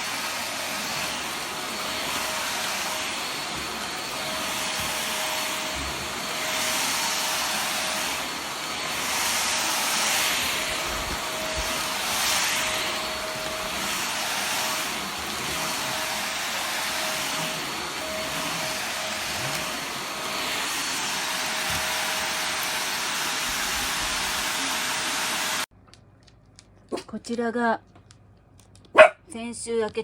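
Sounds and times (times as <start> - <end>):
vacuum cleaner running: 0.0 - 25.7.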